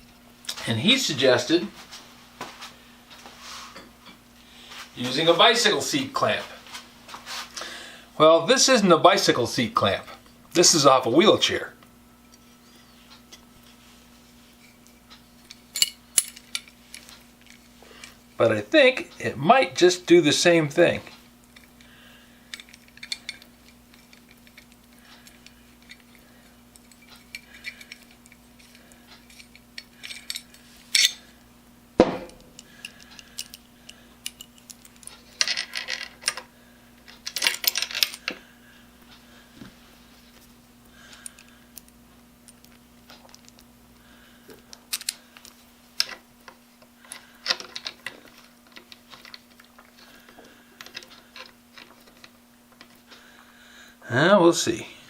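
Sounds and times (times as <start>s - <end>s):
faint steady hum: 0.0s - 55.0s
small metal parts clinking and rattling: 14.6s - 18.4s, 21.5s - 31.2s, 32.3s - 36.5s, 37.1s - 38.4s, 47.0s - 53.0s.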